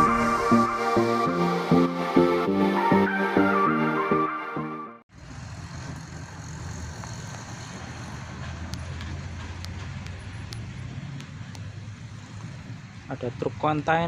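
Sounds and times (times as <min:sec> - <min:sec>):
truck engine rumbling: 0:00.0 - 0:03.7, 0:05.1 - 0:13.9
road traffic: 0:00.0 - 0:04.4, 0:05.1 - 0:14.0
electronic intro music: 0:00.0 - 0:05.0.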